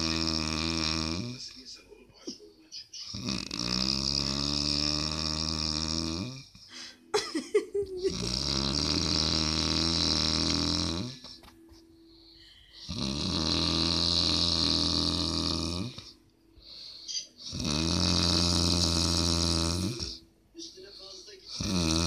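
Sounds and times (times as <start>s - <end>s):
person snoring: 0.0s - 1.4s, 3.1s - 6.6s, 8.0s - 11.4s, 12.8s - 16.2s, 17.4s - 20.2s, 21.5s - 22.0s.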